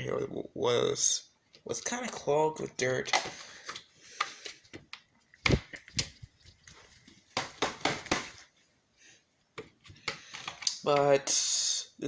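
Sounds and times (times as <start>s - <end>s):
plastic parts clicking and rustling: 9.6s - 11.2s.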